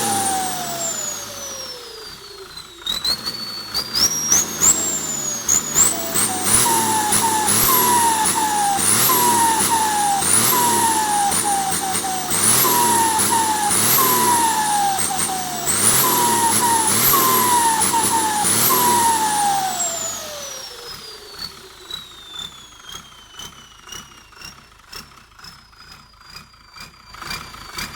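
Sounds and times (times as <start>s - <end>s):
turbocharger whistling: 0.0s - 27.9s.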